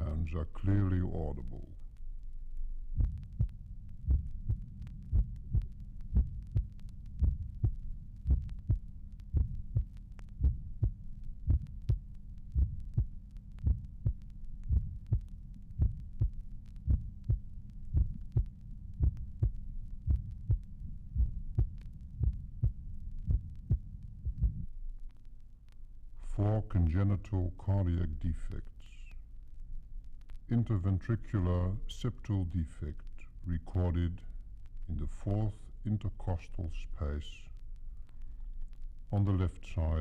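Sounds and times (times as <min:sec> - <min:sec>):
steady low hum: 0:00.0 - 0:40.0
heartbeat knocks: 0:03.0 - 0:12.0, 0:12.6 - 0:15.2, 0:15.8 - 0:24.7.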